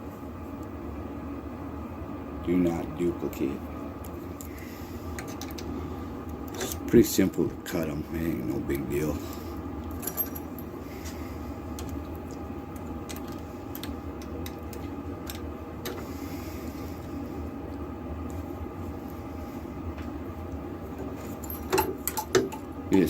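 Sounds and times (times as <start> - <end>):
keys clicking: 13.1 - 14.6.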